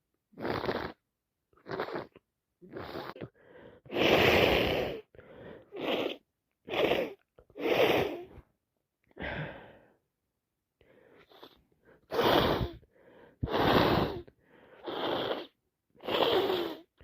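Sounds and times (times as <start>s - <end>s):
woman breathing: 3.0s - 3.9s, 4.9s - 5.8s, 9.1s - 10.0s, 10.8s - 14.9s.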